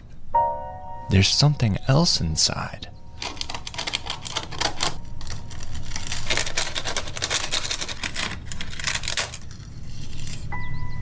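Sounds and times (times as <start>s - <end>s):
papery nest crackling and tearing: 3.2s - 10.6s.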